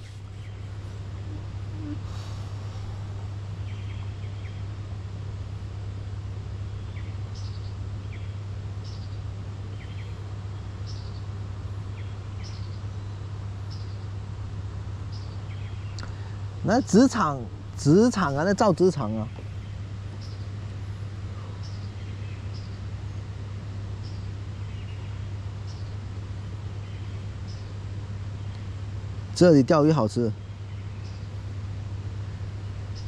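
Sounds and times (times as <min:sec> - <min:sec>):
bird chirping: 0:00.0 - 0:04.7, 0:06.7 - 0:14.1, 0:15.1 - 0:26.1, 0:26.7 - 0:28.7, 0:30.3 - 0:31.4
steady low hum: 0:00.0 - 0:33.0.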